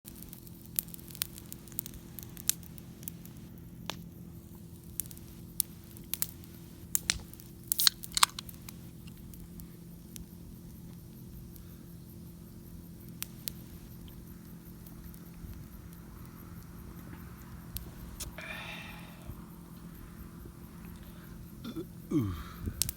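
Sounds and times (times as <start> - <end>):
sharp pops of burning wood: 0.1 - 19.5
campfire crackling: 0.1 - 22.9
steady low hum: 0.1 - 22.9.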